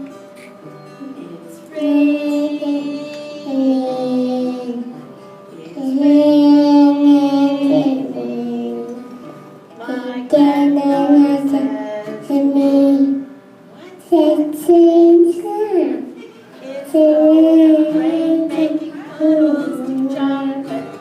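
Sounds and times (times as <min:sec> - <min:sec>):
girl singing long notes: 0:01.2 - 0:05.0, 0:05.8 - 0:16.0, 0:16.6 - 0:21.0.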